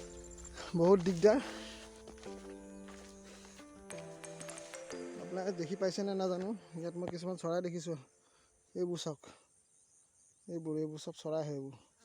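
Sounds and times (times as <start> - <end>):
faint background music: 0.0 - 9.1.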